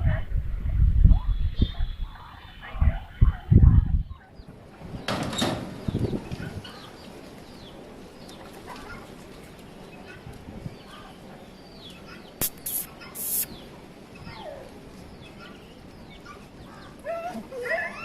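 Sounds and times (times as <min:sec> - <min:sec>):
birds chirping: 0:01.1 - 0:17.0
brief high hissing sounds: 0:12.4 - 0:13.5
steady background hiss: 0:12.4 - 0:14.1.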